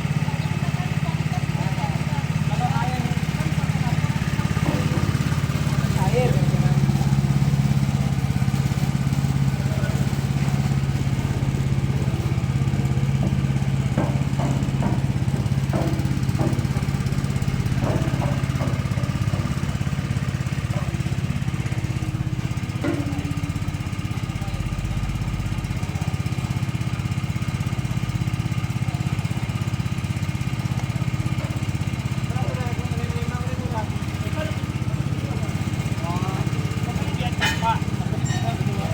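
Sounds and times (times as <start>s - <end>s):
small engine running: 0.0s - 38.9s
short knocks: 3.1s - 25.5s.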